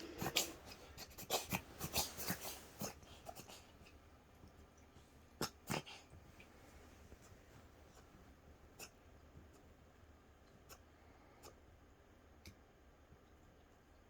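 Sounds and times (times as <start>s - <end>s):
cat sneezing: 0.0s - 3.6s.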